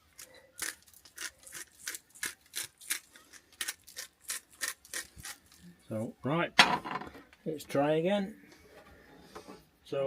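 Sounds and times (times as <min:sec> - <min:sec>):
pepper mill grinding: 0:00.1 - 0:05.6.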